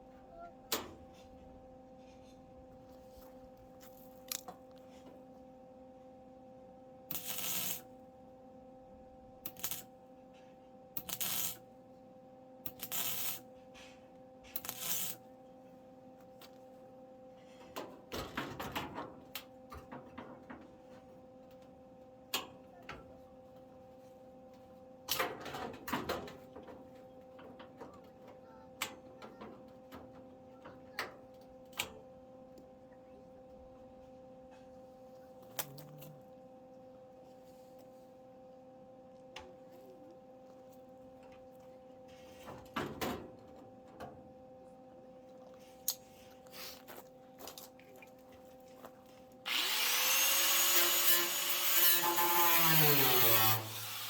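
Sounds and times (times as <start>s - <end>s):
steady electrical hum: 0.0s - 54.0s
welder crackling: 7.1s - 7.8s, 9.5s - 9.8s, 11.0s - 11.6s, 12.7s - 13.4s, 14.6s - 15.2s, 49.5s - 54.0s.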